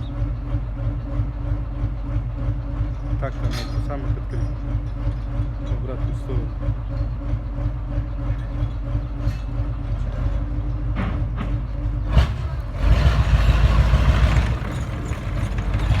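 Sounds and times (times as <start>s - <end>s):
vehicle engine running and revving: 12.0s - 16.0s.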